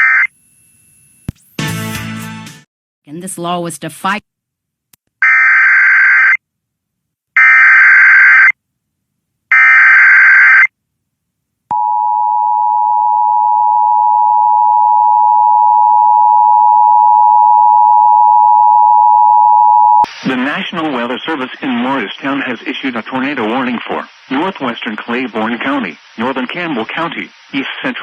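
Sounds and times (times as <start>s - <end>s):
digital data bursts: 20.2s - 28.0s.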